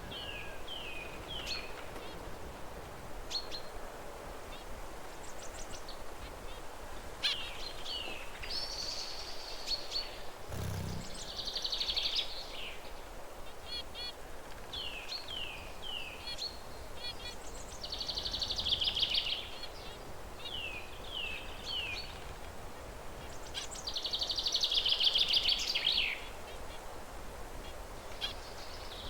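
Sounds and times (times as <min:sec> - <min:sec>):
background hiss: 0:00.0 - 0:29.0
buzzy pulsed birdsong: 0:10.5 - 0:11.6
finches chirping: 0:10.5 - 0:12.0.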